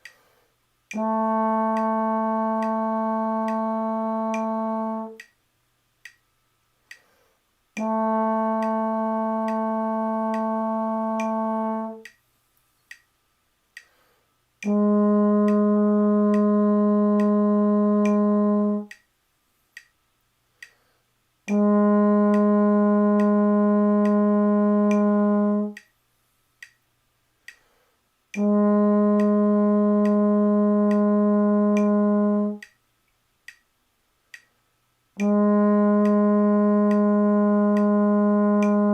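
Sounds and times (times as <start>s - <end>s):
metronome clicking: 0.0s - 5.4s, 6.0s - 6.3s, 6.9s - 12.2s, 12.8s - 14.0s, 14.6s - 19.1s, 19.8s - 20.0s, 20.6s - 26.0s, 26.6s - 26.8s, 27.4s - 34.6s, 35.2s - 38.9s
trombone long notes: 0.9s - 5.2s, 7.8s - 12.1s, 14.6s - 18.9s, 21.5s - 25.8s, 28.4s - 32.6s, 35.2s - 38.9s.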